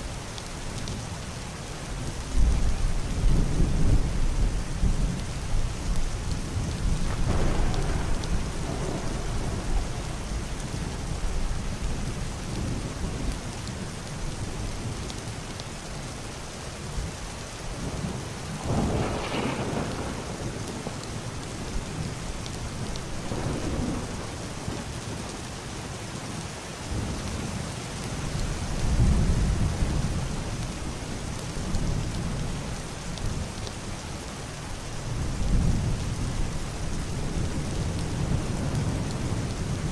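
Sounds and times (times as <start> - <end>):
heavy rain on roof: 0.0 - 39.9
distant thunder rumbling: 6.4 - 12.6, 18.6 - 22.2, 22.8 - 25.2.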